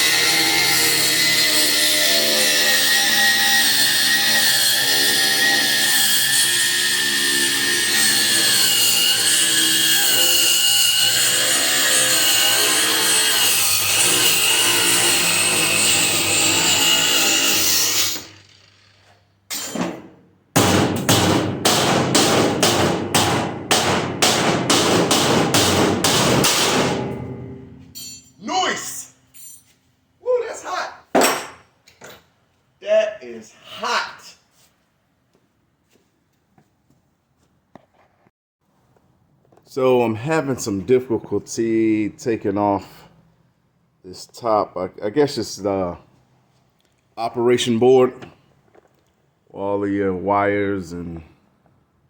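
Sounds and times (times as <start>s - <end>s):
angle grinder cutting steel: 0.0s - 19.7s
sharp knocks: 19.8s - 27.8s.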